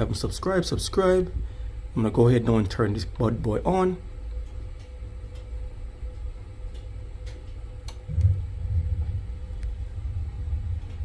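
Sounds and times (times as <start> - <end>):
gas burner rumble: 0.0 - 11.0.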